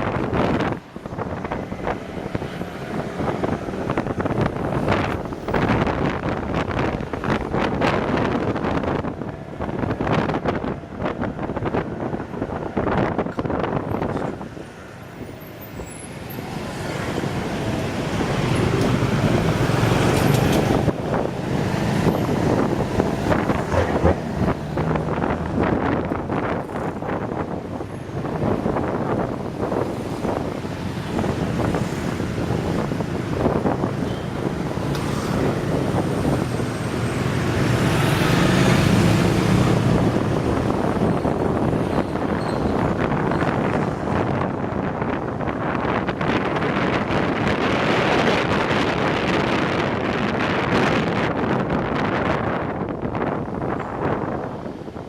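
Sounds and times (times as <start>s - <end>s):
road traffic: 0.0s - 55.0s
wind rushing over microphone: 0.0s - 55.0s.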